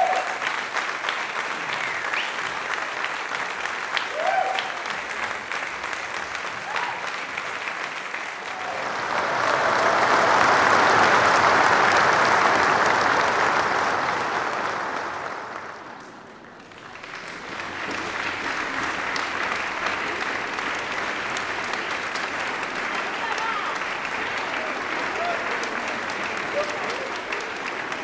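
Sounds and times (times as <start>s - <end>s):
crowd applauding: 0.0s - 28.0s.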